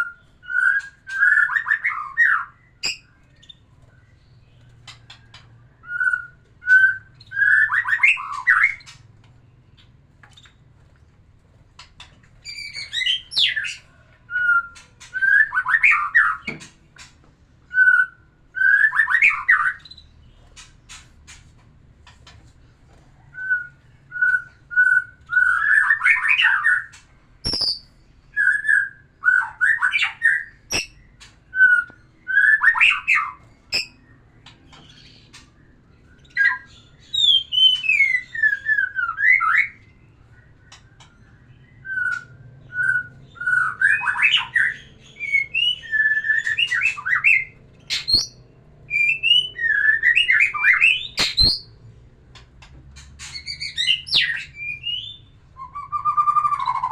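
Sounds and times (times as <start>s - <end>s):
bird singing whistled warbles: 0.0s - 4.6s, 5.7s - 9.0s, 12.4s - 16.6s, 17.7s - 20.1s, 23.3s - 34.2s, 34.8s - 51.8s, 53.2s - 56.9s
sharp clicks: 51.2s - 51.6s.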